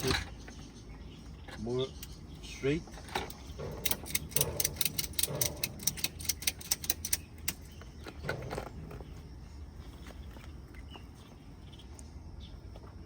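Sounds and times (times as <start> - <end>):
rapid ratchet-like clicking: 3.3 - 7.7.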